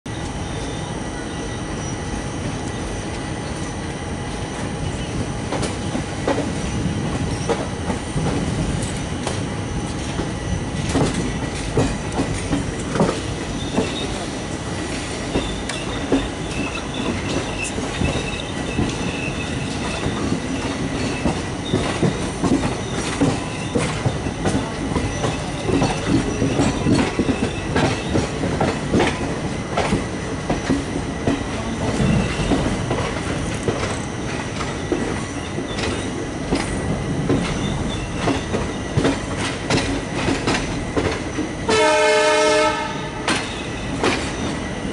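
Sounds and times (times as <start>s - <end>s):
train wheels clattering over rail joints: 5.2s - 44.7s
high wheel squeal: 13.5s - 14.3s, 15.2s - 22.2s, 37.5s - 38.9s.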